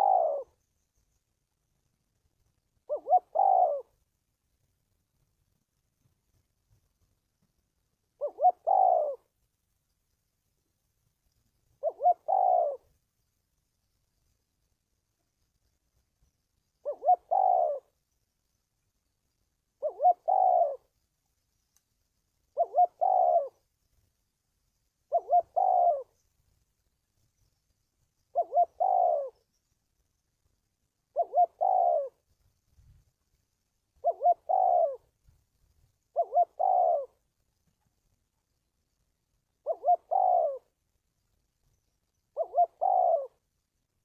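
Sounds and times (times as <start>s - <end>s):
dove cooing: 0.0s - 0.7s, 2.8s - 4.0s, 8.2s - 9.3s, 11.8s - 12.9s, 16.8s - 18.0s, 19.8s - 21.0s, 22.5s - 23.7s, 25.1s - 26.2s, 28.3s - 29.5s, 31.1s - 32.2s, 34.0s - 35.2s, 36.1s - 37.3s, 39.6s - 40.8s, 42.3s - 43.5s.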